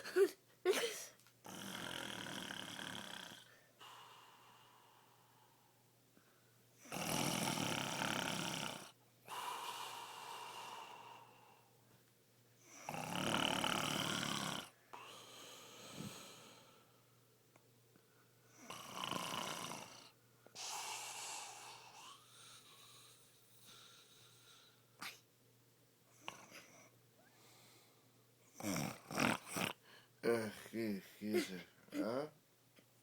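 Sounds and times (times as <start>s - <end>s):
man snoring: 1.4s - 3.5s, 6.8s - 11.4s, 12.7s - 16.8s, 18.6s - 25.2s, 28.6s - 32.3s
soft breath: 15.0s - 17.2s, 20.5s - 25.2s, 26.5s - 28.2s.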